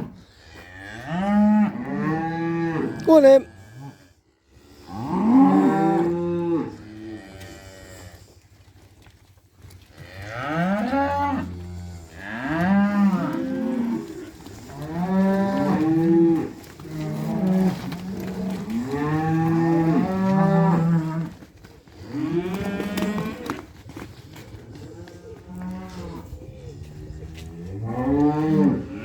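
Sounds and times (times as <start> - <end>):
cattle mooing: 10.0 - 21.4, 22.1 - 23.6, 27.6 - 29.0.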